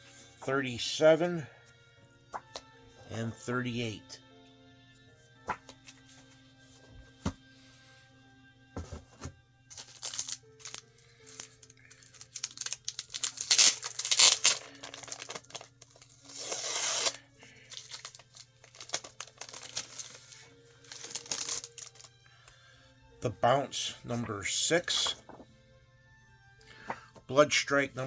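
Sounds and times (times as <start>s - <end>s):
paper and plastic rustling: 8.9s - 22.2s, 25.0s - 25.5s
packaging tearing: 9.7s - 22.1s.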